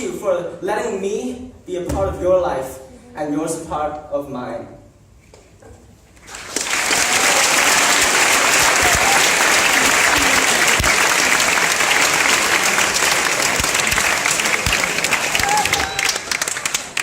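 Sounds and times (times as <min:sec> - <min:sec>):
crowd applauding and cheering: 0:06.2 - 0:17.0.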